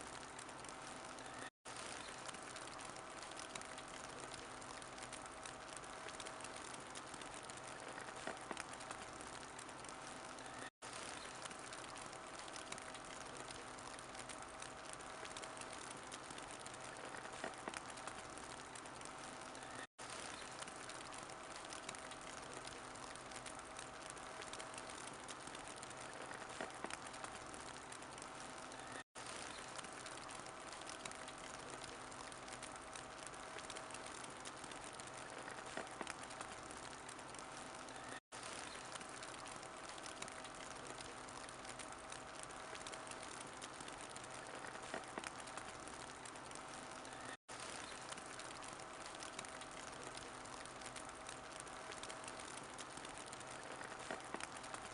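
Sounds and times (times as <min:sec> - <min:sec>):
wood fire crackling: 0:00.0 - 0:54.9.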